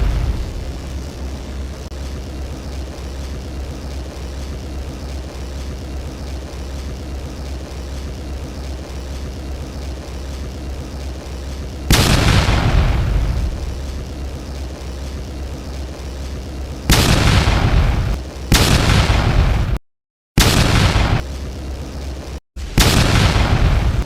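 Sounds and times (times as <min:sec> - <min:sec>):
low engine-like droning rumble: 0:00.0 - 0:16.9.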